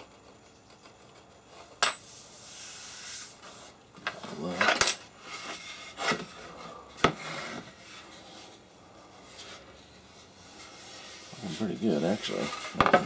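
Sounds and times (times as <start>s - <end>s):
hand scraping on wood: 7.2s - 13.0s.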